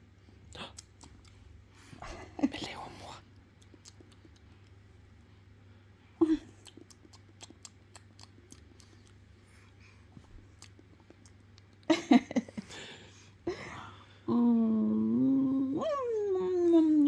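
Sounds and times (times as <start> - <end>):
lip smacks and clicks: 0.5 - 1.5, 3.4 - 4.8, 6.6 - 9.4, 10.2 - 11.9
person humming: 14.3 - 17.0.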